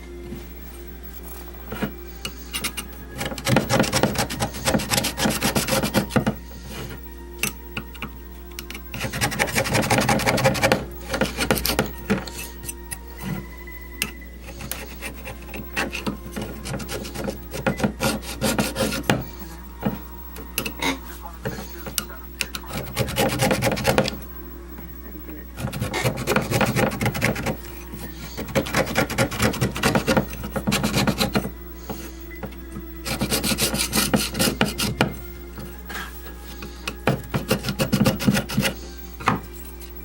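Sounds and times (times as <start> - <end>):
blade scraping speaker cone: 22.5 - 24.2, 25.6 - 31.5, 36.4 - 38.9.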